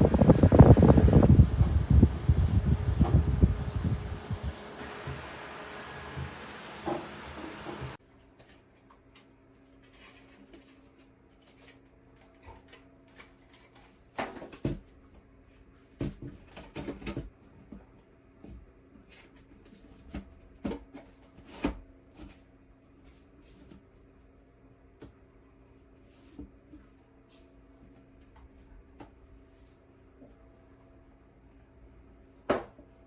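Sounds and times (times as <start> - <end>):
electric fan blowing air: 0.0 - 8.0
faint steady hum: 0.0 - 8.0.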